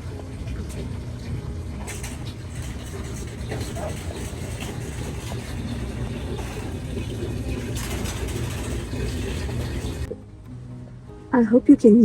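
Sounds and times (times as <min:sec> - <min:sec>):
rain on a vehicle roof: 0:00.0 - 0:10.1.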